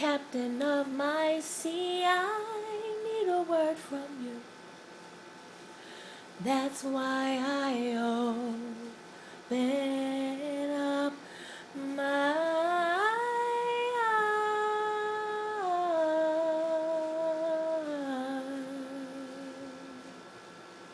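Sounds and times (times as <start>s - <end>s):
woman humming: 14.0s - 20.2s.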